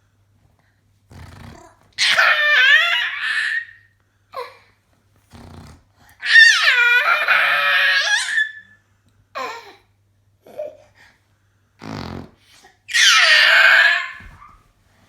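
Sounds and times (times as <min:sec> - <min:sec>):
child squealing with laughter: 0:02.0 - 0:03.8, 0:06.2 - 0:08.7, 0:12.9 - 0:14.5.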